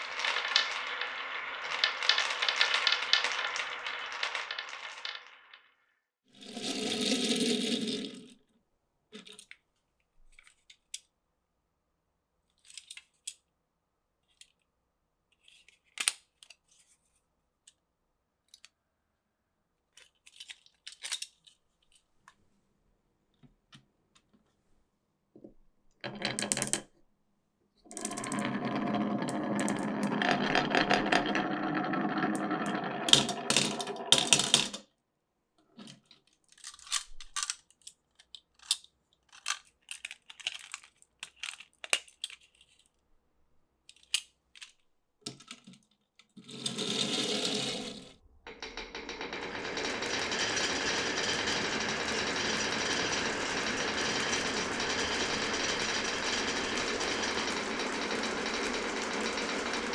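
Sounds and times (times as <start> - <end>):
marbles clacking on wooden track: 0.0 - 5.7, 6.4 - 8.4, 26.0 - 26.9, 27.9 - 34.8, 46.5 - 59.9
marbles rolling rattle: 0.0 - 5.8, 6.4 - 8.4, 27.9 - 34.8, 46.5 - 59.9.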